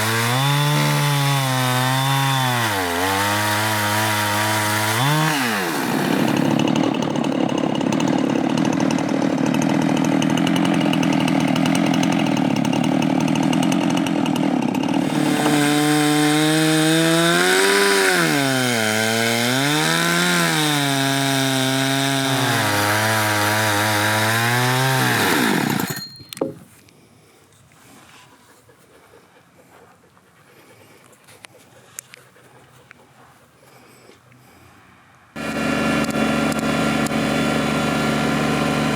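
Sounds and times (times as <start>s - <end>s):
chainsaw ripping a log: 0.0s - 26.3s, 35.4s - 38.9s.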